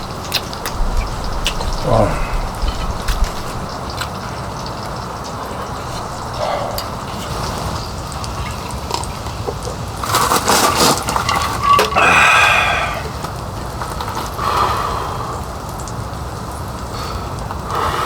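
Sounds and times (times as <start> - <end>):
liquid pouring into a vessel: 0.0 - 13.3
steady rain: 0.0 - 18.0
cookware clattering: 8.3 - 13.0.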